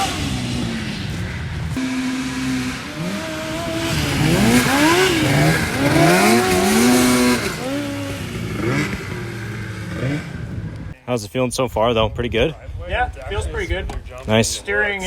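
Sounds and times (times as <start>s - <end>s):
buggy engine revving: 0.0s - 11.0s.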